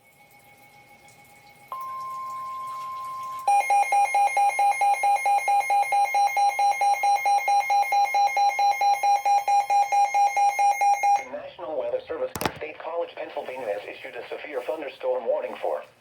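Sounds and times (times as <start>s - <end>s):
rapid alarm beeping: 0.3s - 11.3s.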